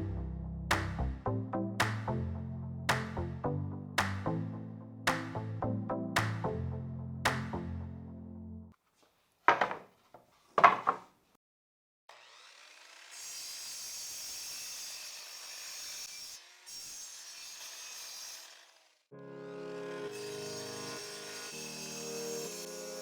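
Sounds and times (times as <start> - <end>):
wood knocking: 9.5 - 9.9, 10.6 - 11.1.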